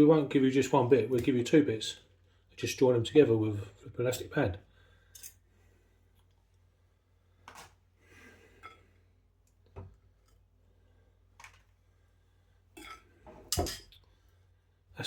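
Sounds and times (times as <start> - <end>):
low steady hum: 0.0 - 15.0
cutlery clicks and knocks: 12.8 - 14.0.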